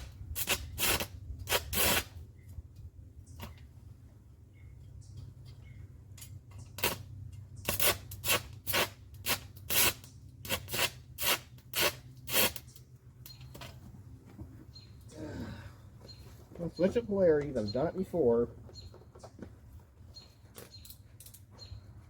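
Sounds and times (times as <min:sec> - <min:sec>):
welding arc crackling: 0:00.0 - 0:02.1, 0:06.8 - 0:07.0, 0:07.6 - 0:12.6.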